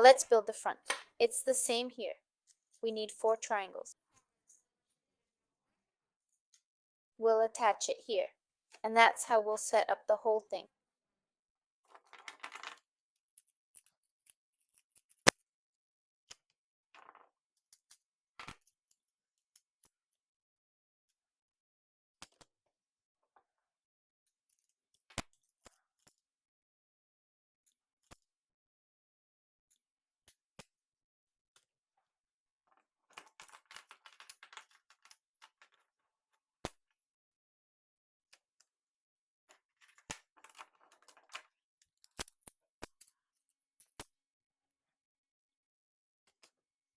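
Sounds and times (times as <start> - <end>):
small plastic clicks: 39.5 - 43.2
plastic pieces clattering: 39.9 - 41.5
plastic tiles rustling: 39.9 - 41.5.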